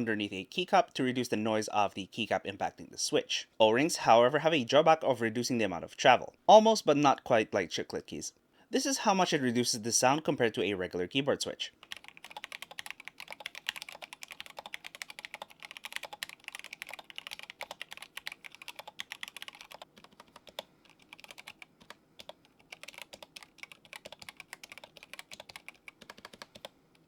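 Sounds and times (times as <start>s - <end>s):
typing on mechanical keyboard: 11.8s - 27.0s.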